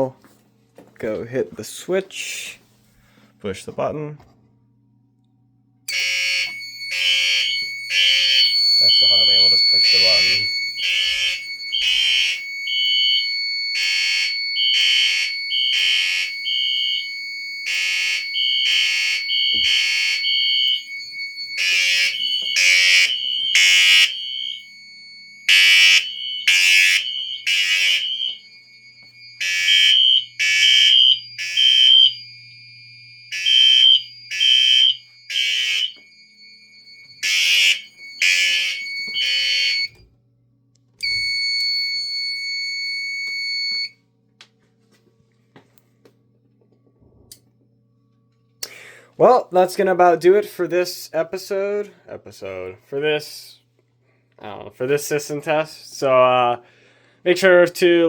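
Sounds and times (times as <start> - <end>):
fire alarm horn blasts: 5.9 - 40.0, 41.0 - 44.0
faint steady high tone: 6.4 - 10.8.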